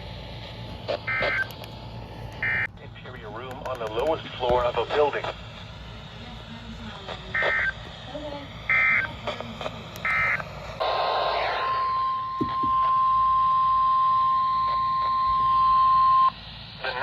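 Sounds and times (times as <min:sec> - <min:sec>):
steady alarm tone: 0:00.3 - 0:01.6, 0:02.4 - 0:02.7, 0:04.5 - 0:17.0
radio static: 0:00.8 - 0:17.0
digital data bursts: 0:02.4 - 0:02.7, 0:07.2 - 0:07.8, 0:08.7 - 0:09.4, 0:10.0 - 0:17.0.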